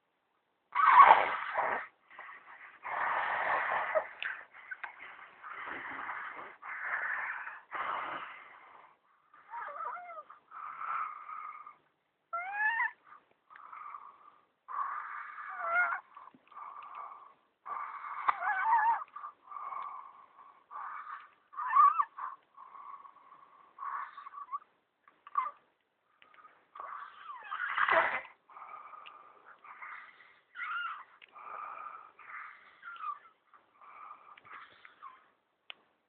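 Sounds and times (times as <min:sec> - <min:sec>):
snoring with squeaky whistling: 0:00.8 - 0:25.6, 0:26.2 - 0:35.3
faint noisy breathing: 0:01.3 - 0:11.9, 0:13.0 - 0:24.7, 0:25.4 - 0:35.5.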